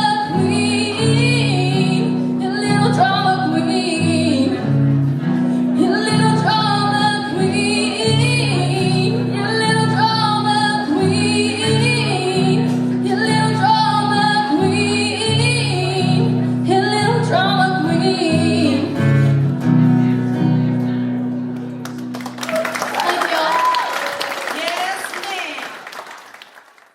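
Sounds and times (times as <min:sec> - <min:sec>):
woman singing: 0:00.0 - 0:04.9, 0:05.6 - 0:19.3.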